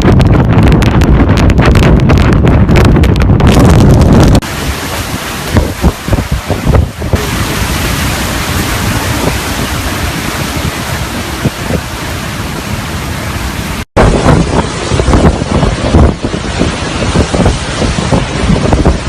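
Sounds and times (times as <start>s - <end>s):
gusty buffeting wind: 0.0s - 19.0s
wind blowing against microphone: 0.0s - 19.0s.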